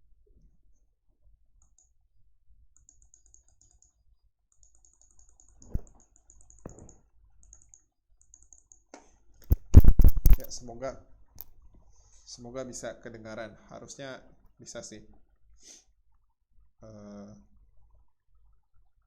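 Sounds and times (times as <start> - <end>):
computer clicks: 2.8 - 10.6.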